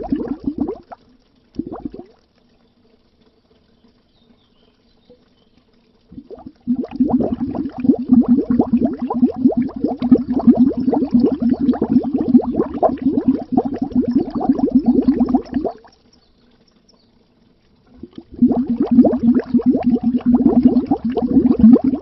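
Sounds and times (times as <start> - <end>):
bubbles under water: 0.0 - 1.0, 1.6 - 2.2, 6.1 - 16.0, 17.9 - 22.0.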